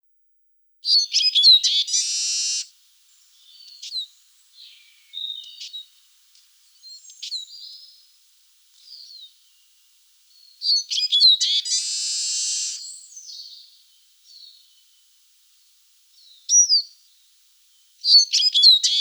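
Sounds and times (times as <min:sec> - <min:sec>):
short slurred bird calls: 0:00.8 - 0:02.7, 0:10.4 - 0:13.7, 0:18.1 - 0:19.0
bird twittering song: 0:00.8 - 0:06.0, 0:06.6 - 0:08.0, 0:08.8 - 0:15.1, 0:16.1 - 0:19.0.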